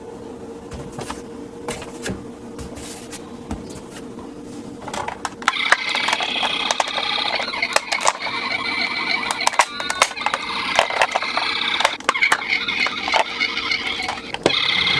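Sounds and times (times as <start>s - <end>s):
plastic toy cars clicking: 4.9s - 14.5s
electronic toy siren: 5.5s - 14.9s.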